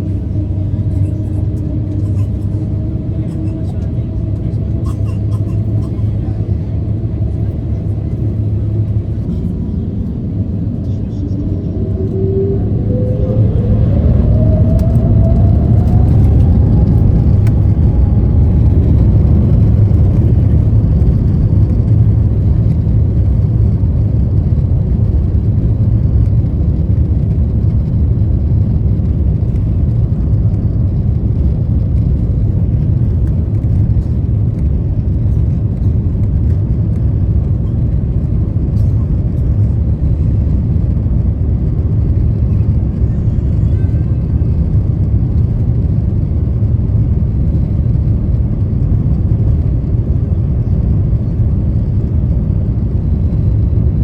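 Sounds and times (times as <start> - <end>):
jet engine cabin rumble: 0.0 - 54.0
faint rising whine: 8.4 - 23.9.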